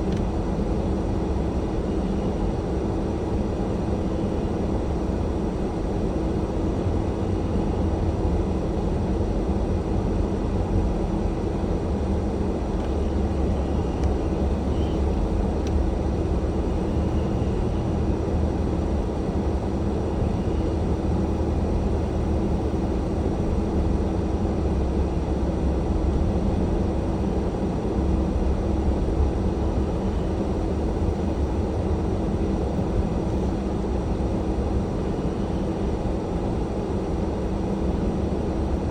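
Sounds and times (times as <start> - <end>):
car engine and road rumble: 0.0 - 38.9.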